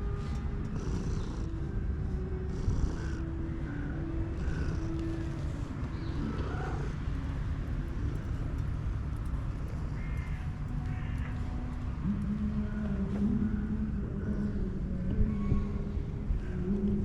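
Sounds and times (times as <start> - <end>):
cat purring: 0.7 - 1.6, 2.2 - 3.2, 4.4 - 7.0.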